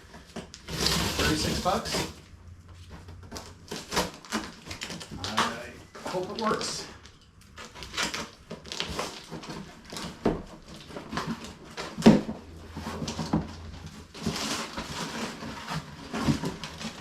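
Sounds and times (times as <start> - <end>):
cardboard package being opened: 0.0 - 2.3, 3.0 - 17.0.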